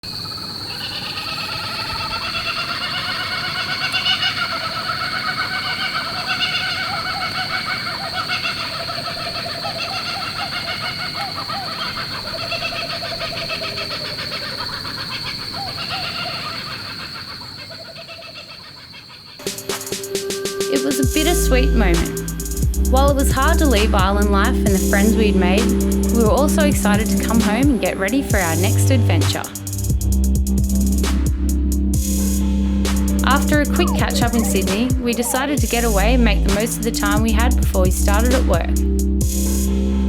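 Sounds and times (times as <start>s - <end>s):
birds warbling chorus: 0.1s - 36.1s
steady high-pitched hum: 19.4s - 40.0s.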